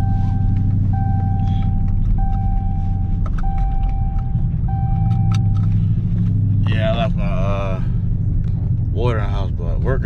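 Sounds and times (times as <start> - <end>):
car warning chime: 0.0 - 5.6
car engine rumble inside cabin: 0.0 - 10.0.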